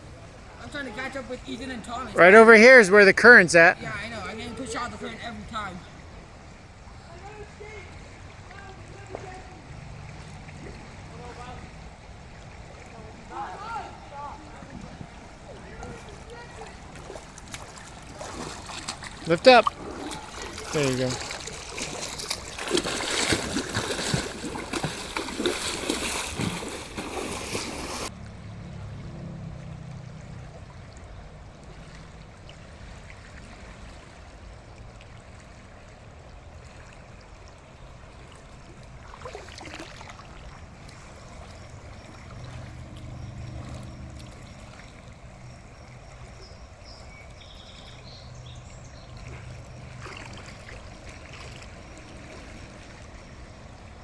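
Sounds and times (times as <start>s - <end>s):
river flowing: 0.0s - 54.0s
water splashing loudly: 13.2s - 28.1s, 39.0s - 45.0s, 49.2s - 53.1s.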